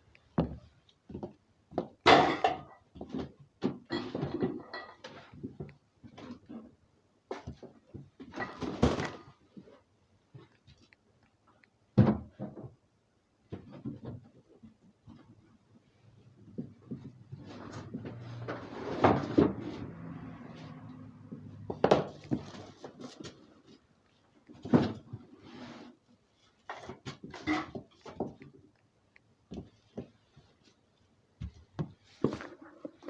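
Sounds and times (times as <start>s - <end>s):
objects knocking and clattering: 1.1s - 6.7s, 7.3s - 9.4s, 16.4s - 23.8s, 26.4s - 28.8s.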